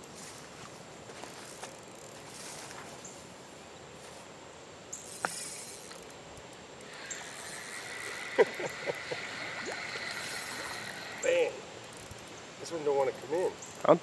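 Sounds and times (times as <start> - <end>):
faint hiss: 1.3 - 14.0
high-pitched insect buzzing: 4.9 - 13.8.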